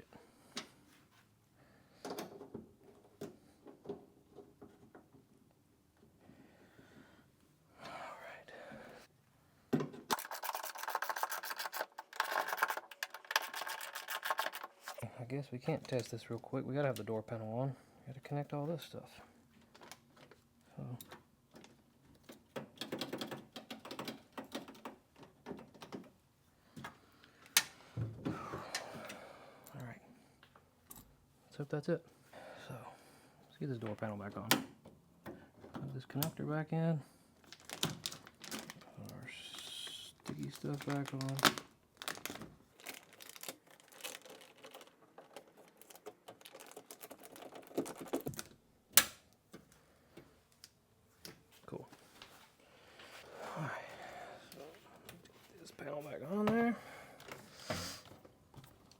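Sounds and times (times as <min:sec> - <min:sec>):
sealant sheet clicks and crinkles: 0:10.0 - 0:15.0, 0:37.4 - 0:38.9, 0:40.2 - 0:49.3
clicks of small parts handled: 0:10.1 - 0:15.0.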